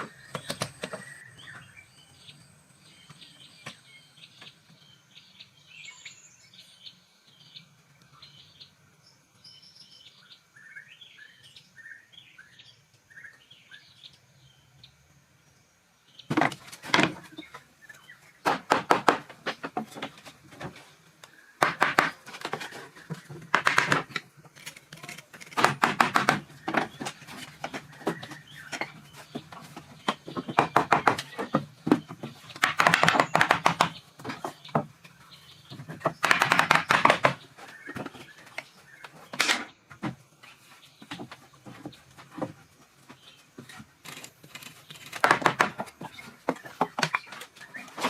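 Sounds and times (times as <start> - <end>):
birds chirping: 0.0 - 48.0
hand tools clattering and scraping: 21.8 - 32.6.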